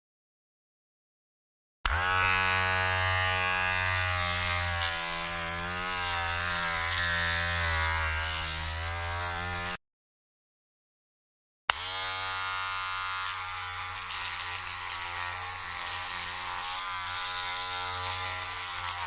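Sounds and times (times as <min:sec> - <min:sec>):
electric hair trimmer buzzing: 0:01.9 - 0:09.8, 0:11.7 - 0:19.0.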